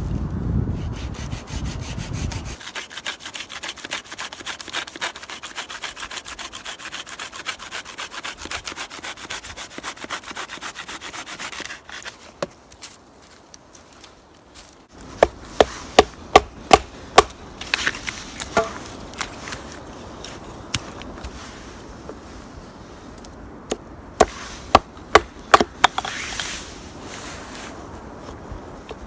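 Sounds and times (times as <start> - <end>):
scraping strokes on wood: 0.8 - 12.6, 24.2 - 27.8.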